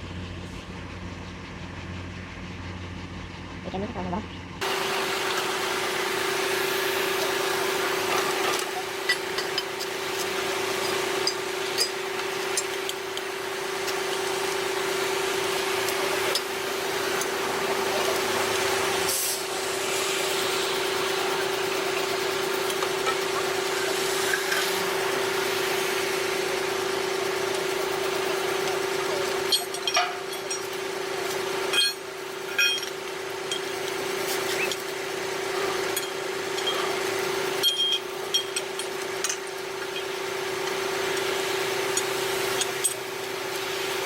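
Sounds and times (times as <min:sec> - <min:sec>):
heavy machine engine humming: 0:00.0 - 0:44.0.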